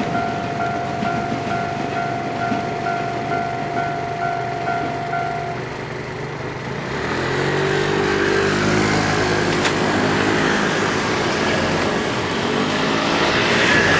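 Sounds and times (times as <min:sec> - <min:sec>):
vehicle engine accelerating: 0:06.4 - 0:13.9.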